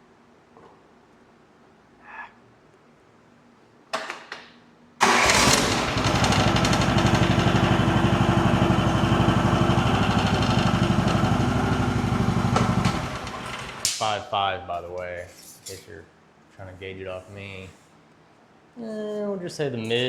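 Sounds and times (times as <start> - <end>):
excavator engine starting and running: 5.0 - 14.0.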